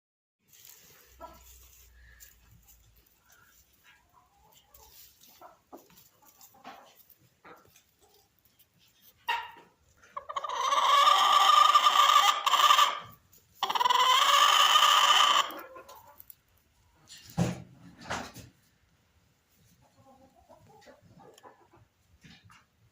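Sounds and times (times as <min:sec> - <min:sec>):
chicken calling: 0:09.2 - 0:16.3.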